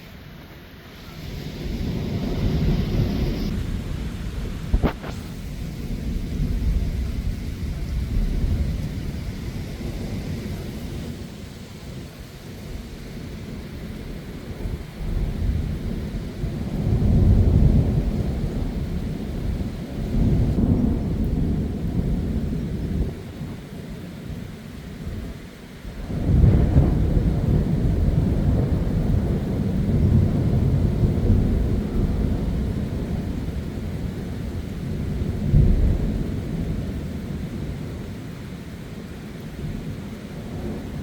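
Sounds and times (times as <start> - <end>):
heavy rain: 0.0 - 41.0
thunder rumbling: 1.0 - 38.3
sharp thunder clap: 1.6 - 9.0.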